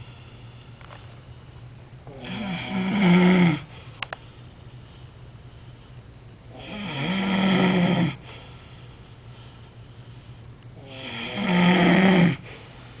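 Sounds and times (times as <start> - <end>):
heavy snoring: 2.1 - 3.7, 6.5 - 8.2, 10.8 - 12.6.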